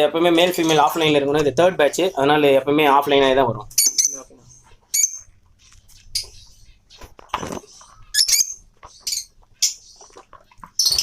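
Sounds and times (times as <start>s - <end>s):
lovebirds chirping: 3.6s - 11.0s.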